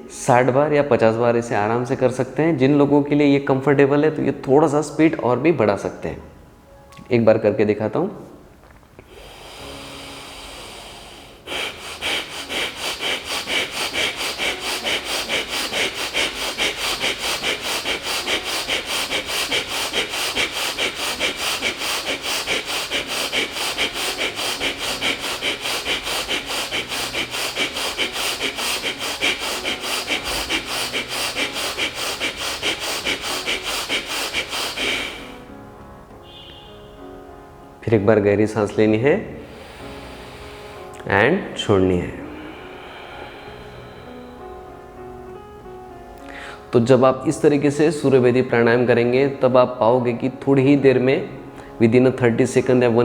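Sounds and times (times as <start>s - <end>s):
person breathing rapidly through nose: 9.0s - 37.0s, 39.4s - 45.0s, 46.2s - 46.8s, 51.4s - 51.8s.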